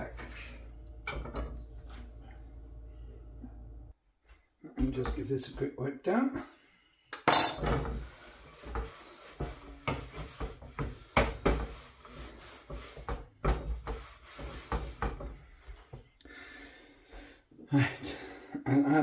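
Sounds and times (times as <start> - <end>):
cloth rubbing a surface: 7.9 - 15.7.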